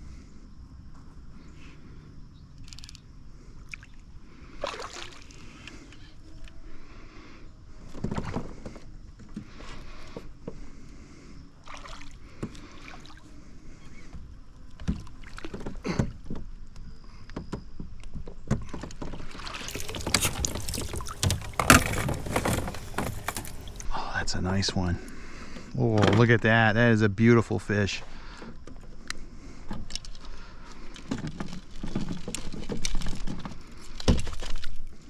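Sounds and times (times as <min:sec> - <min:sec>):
fish splashing: 0:19.7 - 0:23.8
water sloshing: 0:19.7 - 0:23.9.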